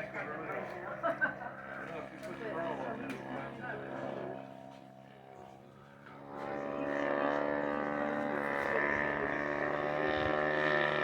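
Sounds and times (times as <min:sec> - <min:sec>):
propeller airplane engine droning: 0:05.3 - 0:11.0.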